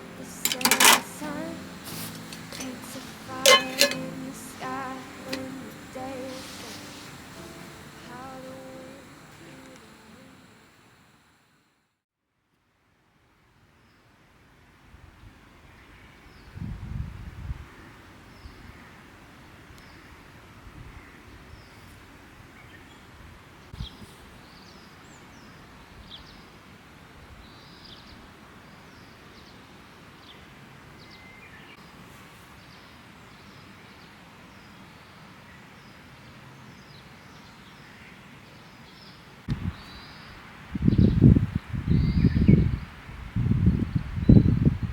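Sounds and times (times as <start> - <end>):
steady outdoor hiss: 0.0 - 12.0, 12.8 - 44.9
small birds chirping: 36.8 - 43.0.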